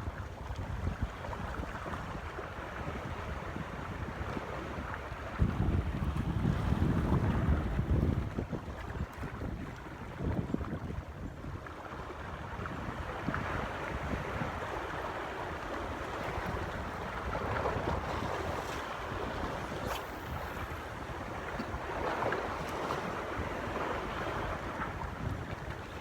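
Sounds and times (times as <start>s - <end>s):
wind buffeting microphone: 0.0s - 11.6s, 12.4s - 26.0s
water waves washing: 14.6s - 26.0s.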